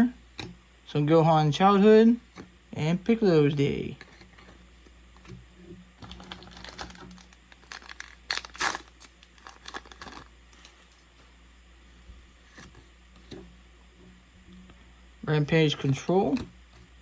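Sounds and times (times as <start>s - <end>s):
cards and foil pack rustling: 6.0s - 11.1s.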